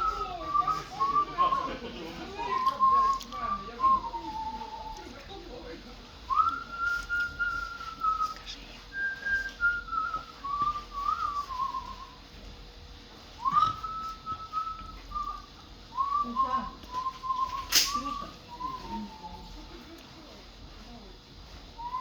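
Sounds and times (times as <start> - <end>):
man whistling a melody: 0.0 - 5.2, 6.3 - 12.2, 13.4 - 19.6, 21.8 - 22.0
sharp click: 17.7 - 18.0.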